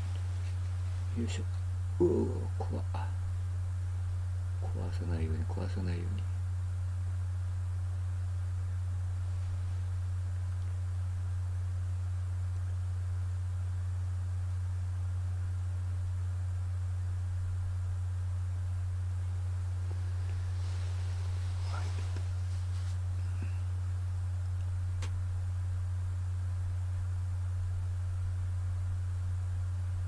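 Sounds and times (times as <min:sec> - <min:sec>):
faint hiss: 0:00.0 - 0:06.5, 0:18.6 - 0:25.2
low hum: 0:00.0 - 0:30.0.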